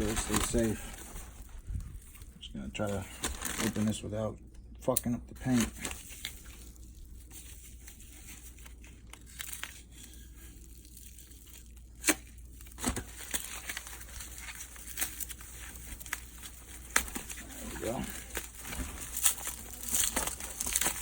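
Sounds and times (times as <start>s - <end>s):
packaging tearing and crinkling: 0.0s - 4.0s, 5.4s - 21.0s.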